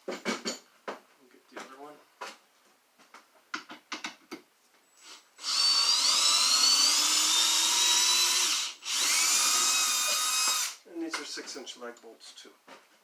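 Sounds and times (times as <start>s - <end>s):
power drill whining: 5.0s - 10.8s.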